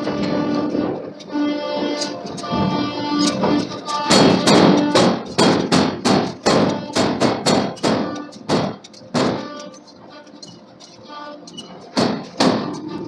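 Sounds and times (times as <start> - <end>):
background music: 0.0 - 13.0
hammer blows on steel: 2.0 - 9.7, 12.0 - 13.0.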